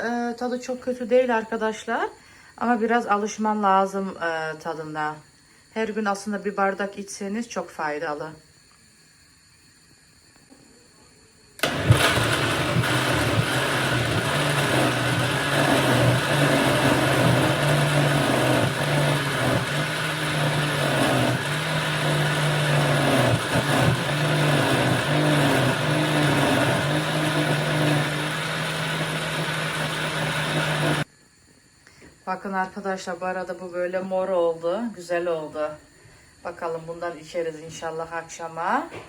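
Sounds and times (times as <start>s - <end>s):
electric blender running: 11.6s - 31.1s.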